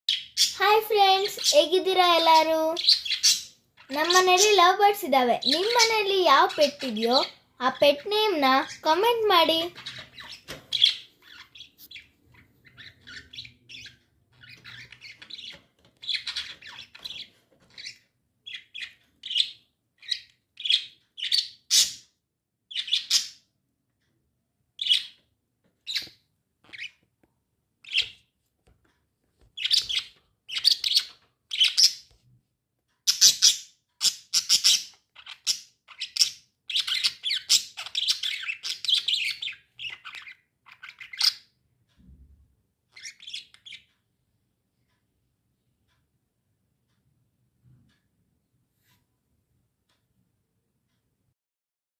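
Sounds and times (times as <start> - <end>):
parrots chirping and squawking: 0.1 - 4.7, 5.3 - 22.1, 22.7 - 23.5, 24.8 - 25.2, 25.8 - 27.0, 29.6 - 32.1, 33.0 - 41.5, 42.9 - 43.8.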